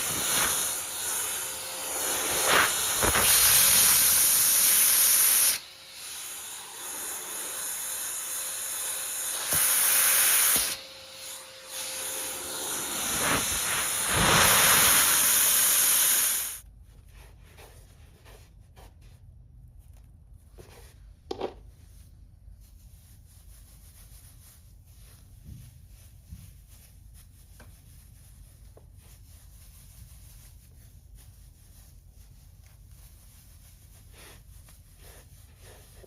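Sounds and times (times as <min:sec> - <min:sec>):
vacuum cleaner suction hiss: 0:00.0 - 0:16.6.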